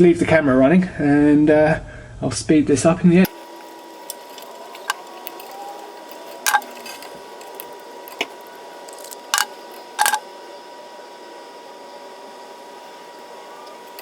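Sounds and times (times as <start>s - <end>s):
faint steady whine: 3.1s - 14.0s
hand tools clicking on cable: 3.3s - 10.2s.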